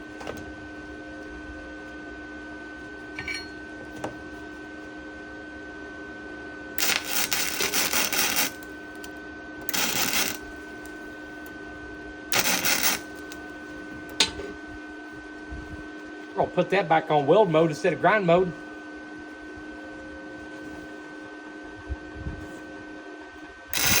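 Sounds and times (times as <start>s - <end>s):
welding crackle: 6.8s - 11.5s, 12.3s - 13.4s, 23.7s - 24.0s.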